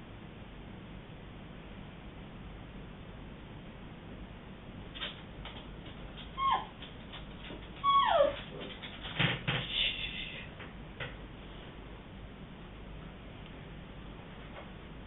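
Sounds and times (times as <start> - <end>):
soft clicks and rustles: 4.9 - 9.7
dog whimpering: 6.2 - 6.9, 7.8 - 8.8.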